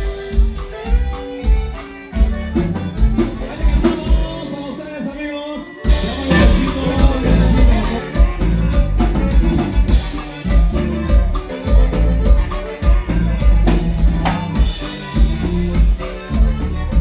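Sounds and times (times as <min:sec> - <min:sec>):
band music with strong bass: 0:00.0 - 0:17.0.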